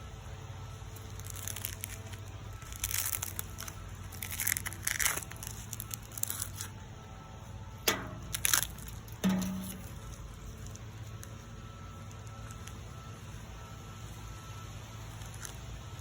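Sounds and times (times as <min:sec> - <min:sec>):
cracked glass and plastic crunching: 0:01.0 - 0:06.8, 0:07.8 - 0:13.1, 0:15.1 - 0:15.8.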